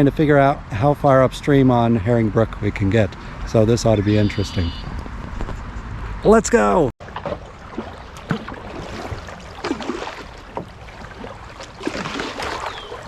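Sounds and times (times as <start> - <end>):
paddle strokes splashing water: 7.0 - 13.0.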